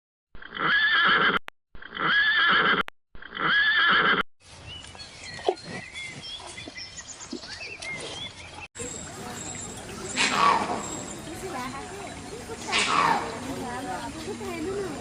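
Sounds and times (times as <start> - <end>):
horse whinnying: 0.5 - 4.2.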